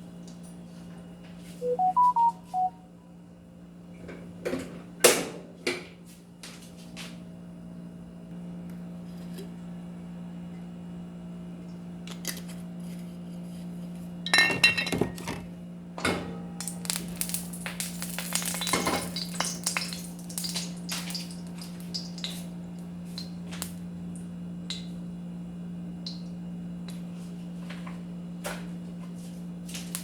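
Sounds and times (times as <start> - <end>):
kitchenware clattering: 14.3 - 15.4.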